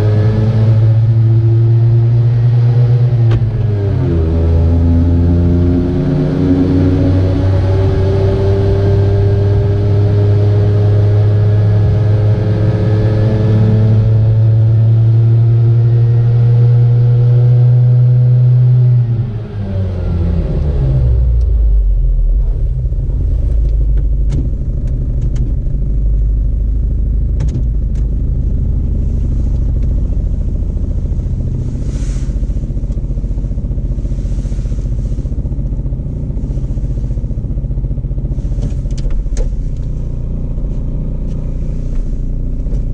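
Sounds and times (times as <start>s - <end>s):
engine clicks: 23.6s - 26.4s, 27.2s - 28.6s, 38.6s - 42.9s
small two-stroke engine running: 30.4s - 42.9s.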